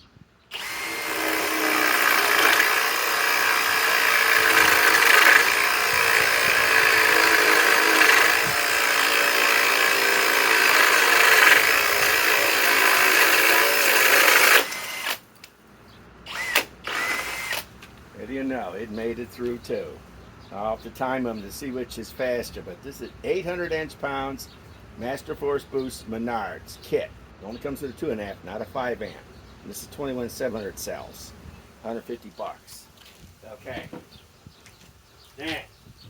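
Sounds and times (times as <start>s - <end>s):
cordless drill under heavy load: 0.5s - 15.3s, 16.3s - 17.8s.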